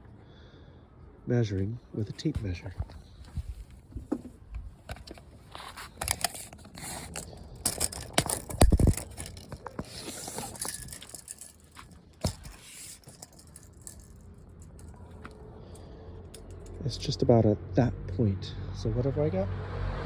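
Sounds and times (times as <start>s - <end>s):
tape measure scraping and clicking: 4.9s - 14.9s.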